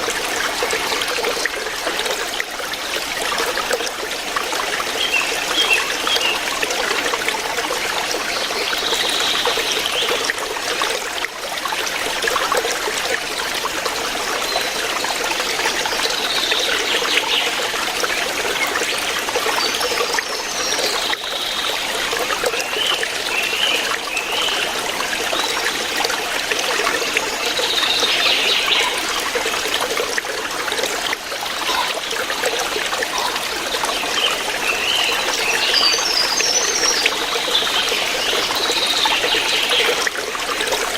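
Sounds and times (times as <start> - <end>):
stream flowing over rocks: 0.0 - 40.9.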